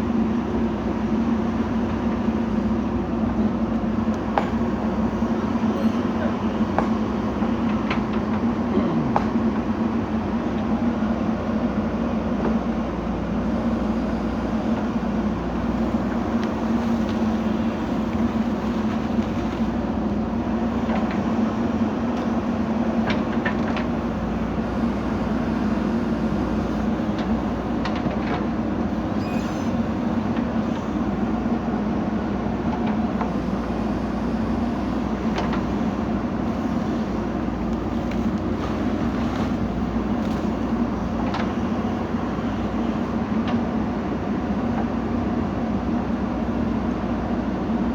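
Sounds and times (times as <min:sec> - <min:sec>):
diesel engine running: 0:00.0 - 0:47.9.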